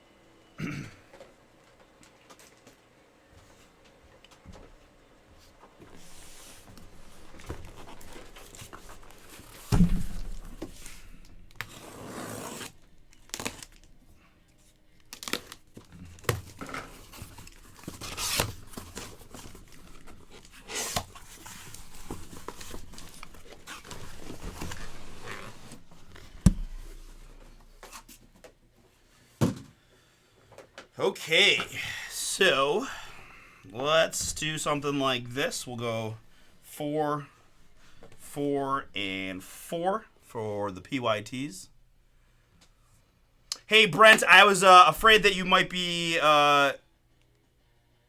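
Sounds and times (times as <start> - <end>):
packaging crinkling and tearing: 6.2 - 14.1, 14.7 - 28.0.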